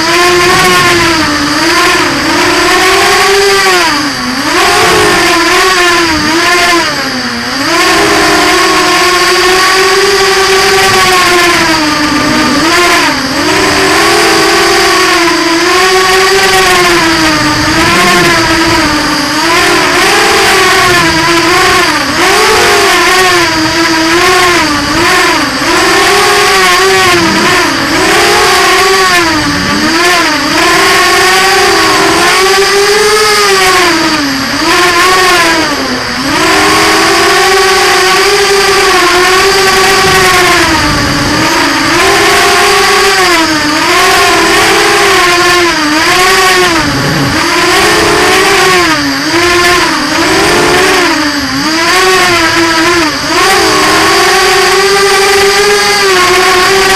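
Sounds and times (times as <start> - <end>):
drone motors whining: 0.0 - 56.9
steady high-pitched tone: 10.0 - 24.2.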